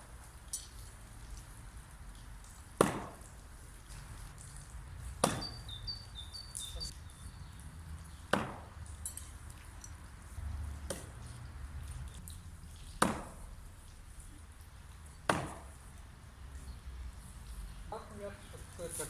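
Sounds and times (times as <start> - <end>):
throwing knife striking target: 5.2 - 5.6.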